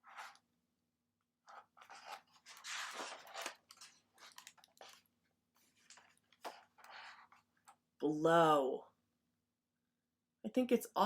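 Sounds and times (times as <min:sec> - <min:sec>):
book pages rustling: 0:00.0 - 0:00.4, 0:01.5 - 0:07.8.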